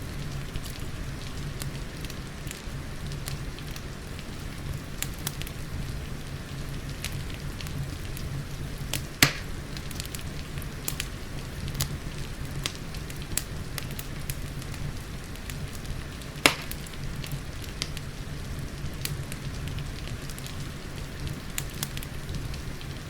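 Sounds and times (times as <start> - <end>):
rain hiss: 0.0 - 23.0
wood fire crackling and popping: 0.0 - 23.0.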